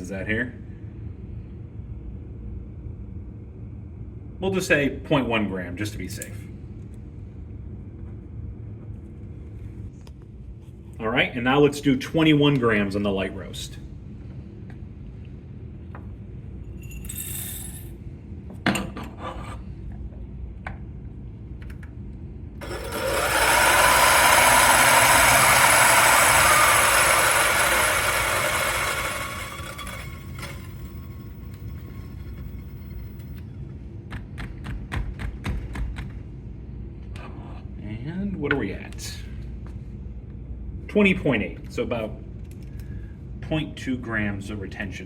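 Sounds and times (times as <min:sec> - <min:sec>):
coffee grinder crunching beans: 0:22.6 - 0:31.6.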